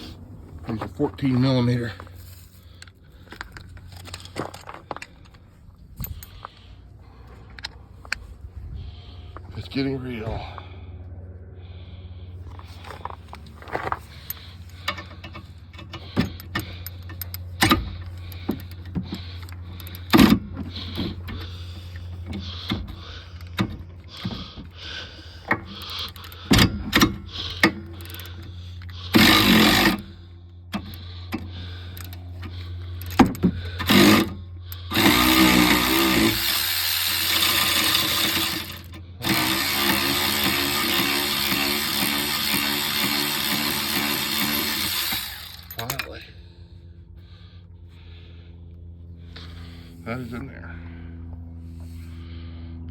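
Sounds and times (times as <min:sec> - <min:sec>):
ratchet wrench ratcheting: 0:14.1 - 0:24.4, 0:25.6 - 0:46.1.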